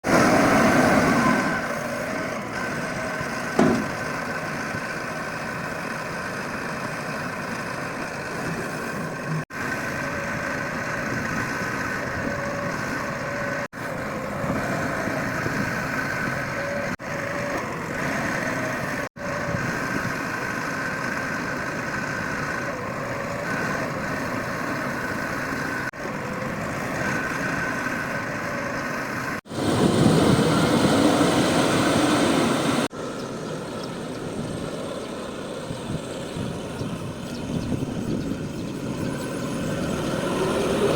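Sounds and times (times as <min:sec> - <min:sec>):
diesel engine running: 0:00.0 - 0:40.9
short knock: 0:03.6 - 0:03.9.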